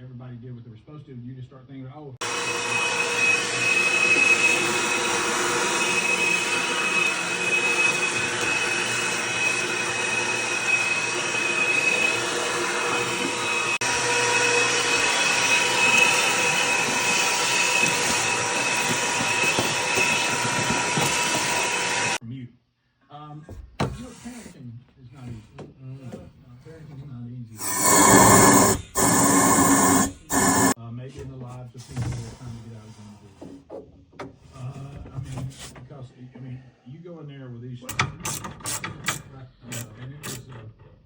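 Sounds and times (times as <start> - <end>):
loud motor whining: 2.2 - 22.2, 27.6 - 30.8.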